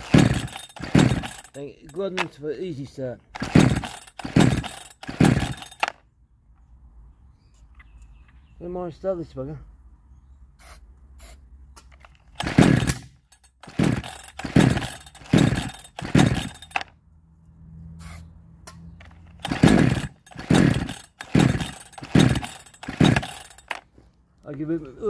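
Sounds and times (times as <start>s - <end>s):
chainsaw recoil cord pulls cranking: 0.0s - 6.0s, 11.9s - 17.0s, 19.0s - 23.9s.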